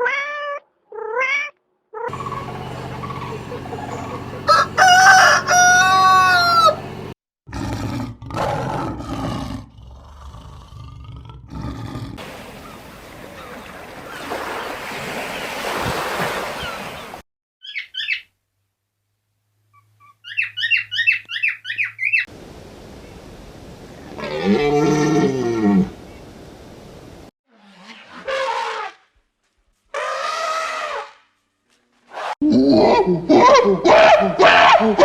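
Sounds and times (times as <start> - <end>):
high chirps and trills: 2.1 - 7.2
low roaring animal calls: 2.1 - 12.8.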